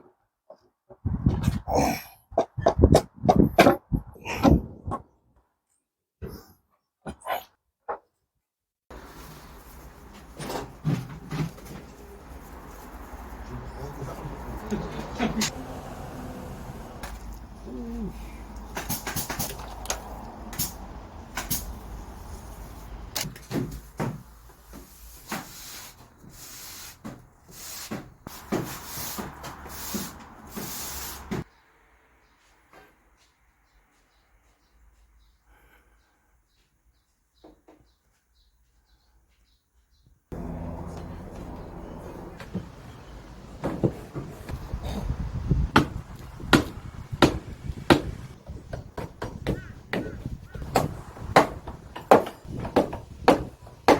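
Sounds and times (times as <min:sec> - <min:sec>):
knocks and thuds on timber: 0:41.3 - 0:53.9.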